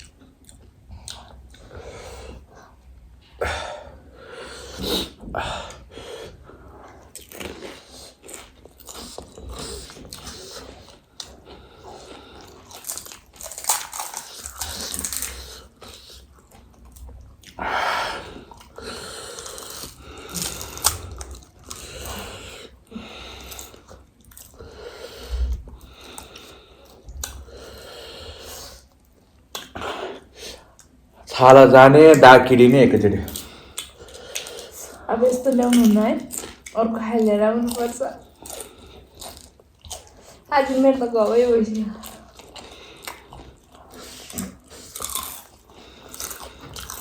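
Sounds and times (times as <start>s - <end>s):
chewing crunchy snack: 7.0s - 17.6s, 18.3s - 22.8s, 23.4s - 24.7s, 33.2s - 40.5s, 41.9s - 47.0s.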